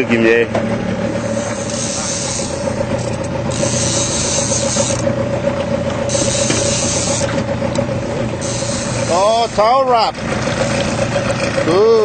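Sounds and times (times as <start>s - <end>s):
boat engine running: 0.0s - 12.0s
fishing reel whirring: 1.0s - 5.2s, 6.0s - 11.3s.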